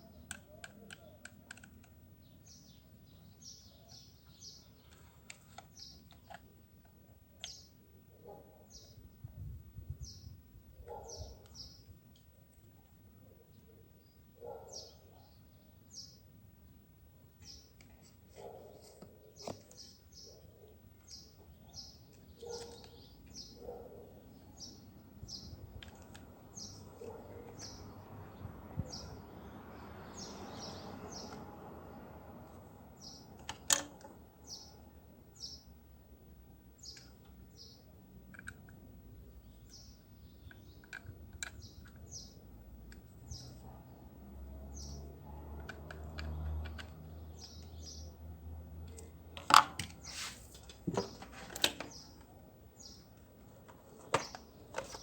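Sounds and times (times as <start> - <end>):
small bird chirping: 0.0 - 6.6, 7.3 - 7.9, 17.4 - 31.4, 39.2 - 43.8.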